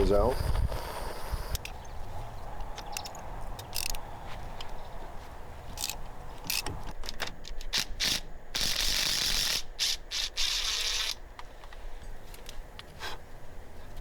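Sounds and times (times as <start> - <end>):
ratchet wrench clicking: 3.7 - 4.0, 7.8 - 11.2.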